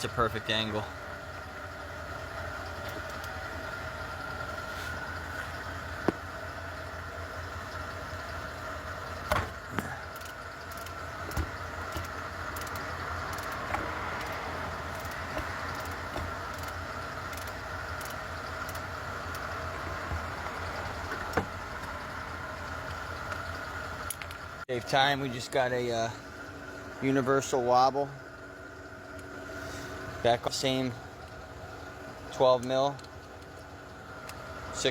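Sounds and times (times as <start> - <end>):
vehicle engine idling: 0.0 - 34.9
ratchet clicking: 10.1 - 22.0.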